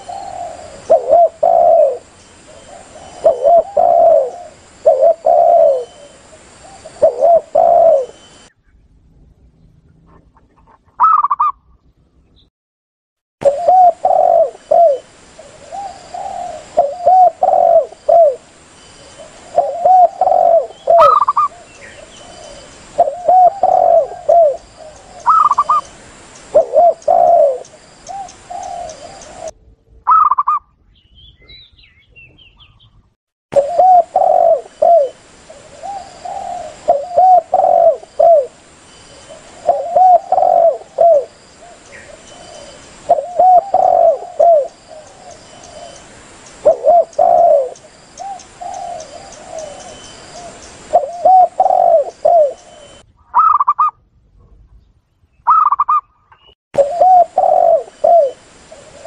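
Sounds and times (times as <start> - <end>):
doves cooing: 0.0 - 8.5, 13.4 - 29.5, 33.6 - 53.9, 56.8 - 59.0
faint hiss: 0.0 - 8.5, 13.4 - 29.5, 33.6 - 53.0, 56.8 - 59.0.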